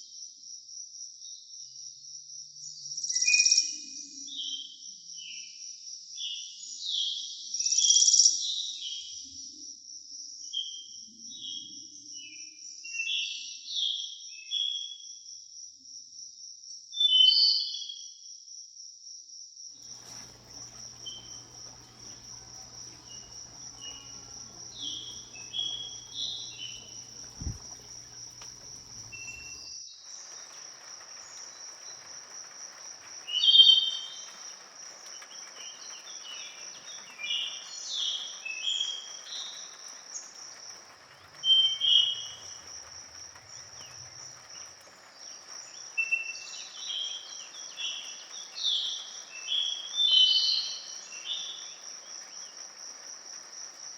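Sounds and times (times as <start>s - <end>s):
insects trilling: 19.8s - 53.9s
birds singing: 19.9s - 52.7s.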